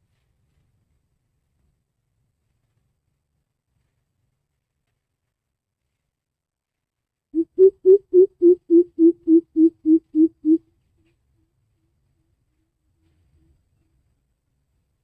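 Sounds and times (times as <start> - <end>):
bird deep hooting call: 7.4 - 10.6.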